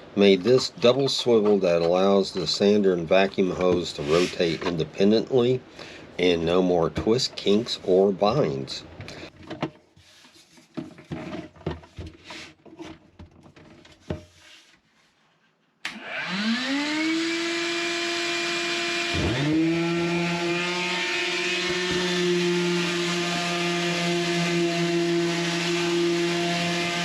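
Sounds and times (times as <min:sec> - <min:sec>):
shop vacuum motor whine: 0:15.8 - 0:27.0
electric sander motor: 0:15.9 - 0:27.0.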